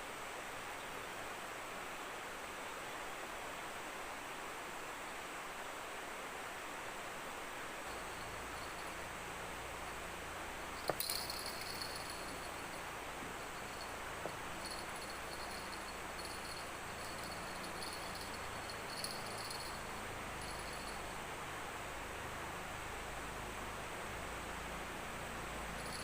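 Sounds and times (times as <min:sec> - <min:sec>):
background hiss: 0:00.0 - 0:26.0
insects chirring: 0:07.9 - 0:09.1, 0:10.7 - 0:21.2, 0:25.8 - 0:26.0.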